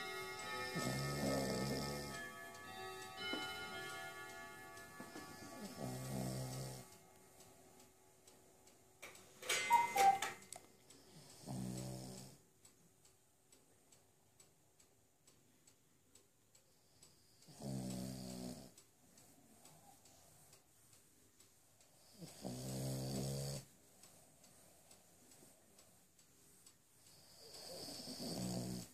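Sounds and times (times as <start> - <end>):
clock ticking: 0.0 - 28.9
person snoring: 0.8 - 2.2, 5.6 - 6.9, 11.2 - 12.4, 22.2 - 23.7, 27.3 - 28.9.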